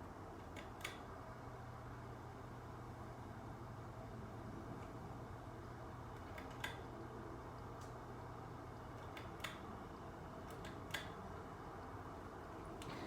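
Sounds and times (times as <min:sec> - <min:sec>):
low fan motor hum: 0:00.0 - 0:13.0
fan pull-chain switch clicks: 0:00.4 - 0:01.1, 0:06.2 - 0:06.9, 0:09.0 - 0:09.7, 0:10.4 - 0:11.2.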